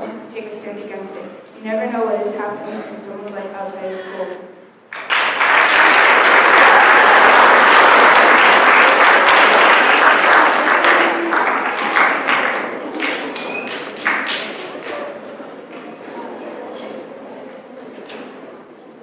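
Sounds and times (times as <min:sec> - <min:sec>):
audience applauding: 0:04.9 - 0:15.0.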